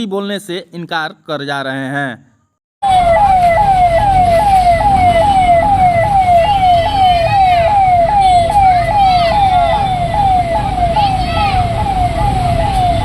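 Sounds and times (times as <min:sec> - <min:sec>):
police siren wailing: 0:02.8 - 0:13.0
traffic noise: 0:02.8 - 0:13.0.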